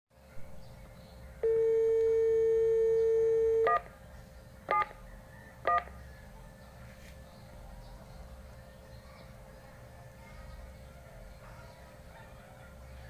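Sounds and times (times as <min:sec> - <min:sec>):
telephone dial tone: 0:01.4 - 0:03.9.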